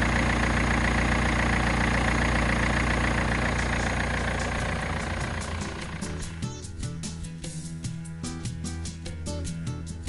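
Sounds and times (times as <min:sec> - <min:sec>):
diesel engine idling: 0:00.0 - 0:06.5.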